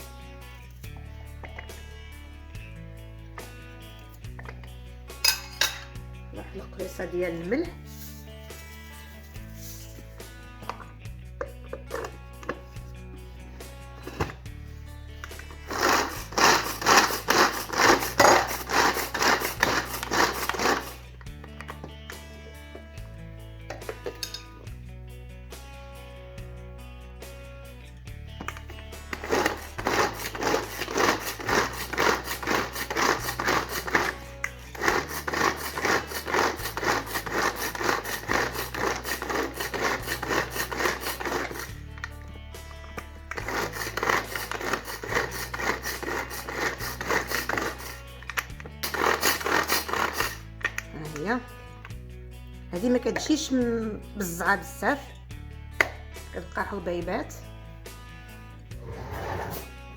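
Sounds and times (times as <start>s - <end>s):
garlic being ground with salt: 15.3s - 23.0s, 28.4s - 52.0s.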